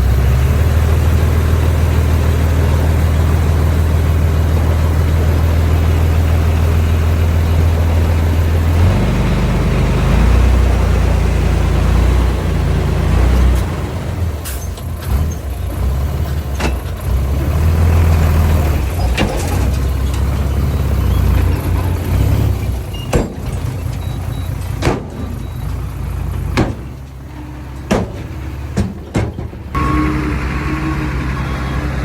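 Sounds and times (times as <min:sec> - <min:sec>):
heavy diesel machinery rumbling: 0:00.0 - 0:32.0
sharp knocks: 0:24.8 - 0:25.4, 0:26.5 - 0:27.0, 0:27.8 - 0:29.8.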